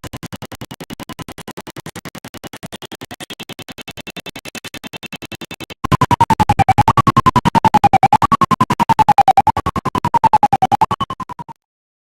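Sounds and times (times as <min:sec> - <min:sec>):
electronic music pulsing tone: 0:05.8 - 0:11.6.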